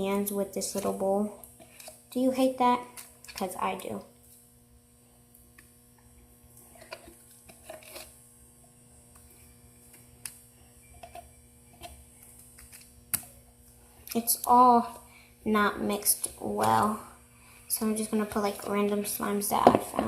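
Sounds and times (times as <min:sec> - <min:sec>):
electrical hum: 0:00.0 - 0:20.0.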